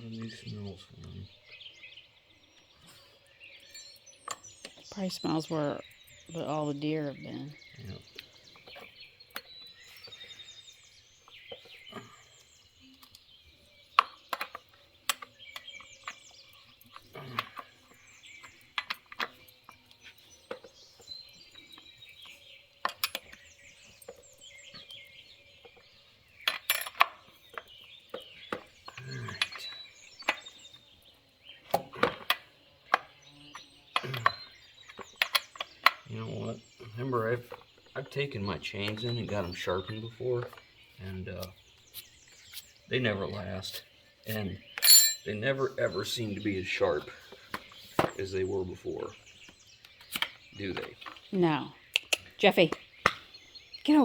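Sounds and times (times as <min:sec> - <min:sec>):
metallic clinks and knocks: 0:22.8 - 0:23.4, 0:26.4 - 0:30.6, 0:44.8 - 0:45.4.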